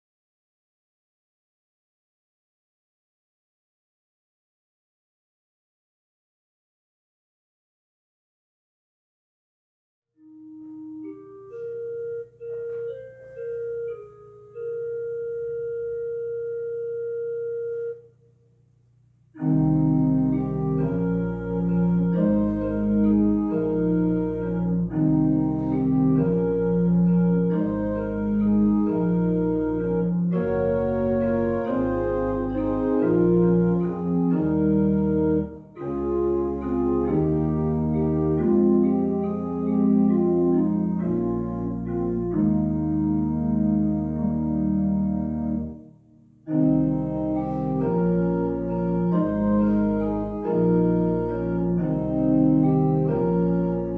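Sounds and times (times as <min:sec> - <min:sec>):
loud full organ chord: 0:10.2 - 0:18.1, 0:19.4 - 0:53.9
soft organ melody: 0:10.2 - 0:18.4, 0:19.3 - 0:53.9.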